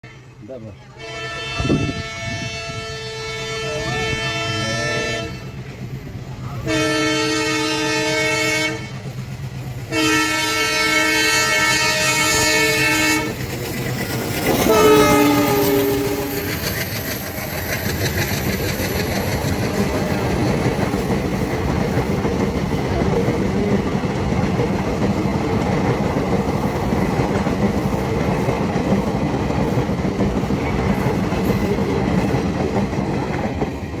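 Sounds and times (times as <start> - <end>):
train wheels rumbling past: 0.1 - 34.0
train horn blasts: 0.9 - 5.6, 6.6 - 9.1, 9.9 - 13.4, 14.5 - 16.7.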